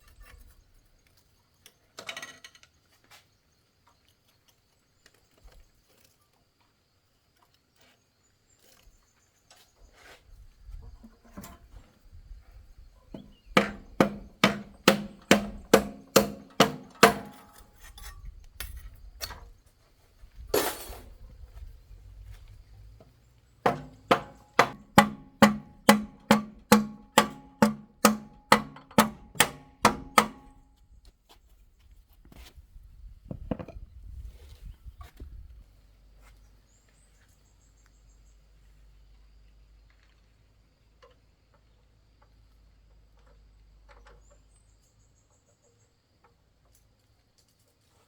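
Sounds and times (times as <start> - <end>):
hammer striking metal: 13.2 - 17.7, 23.7 - 30.6.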